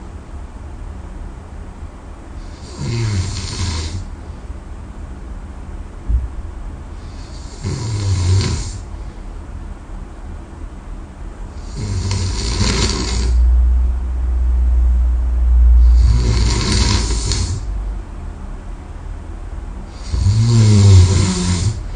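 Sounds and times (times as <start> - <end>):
person snoring: 2.4 - 4.1, 7.0 - 8.8, 11.6 - 13.4, 15.8 - 17.7, 19.9 - 21.9.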